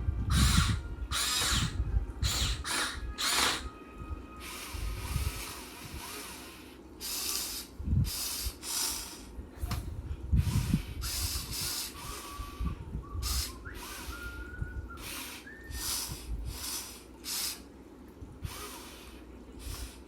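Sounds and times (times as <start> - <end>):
electric motors whining: 0.3 - 6.5.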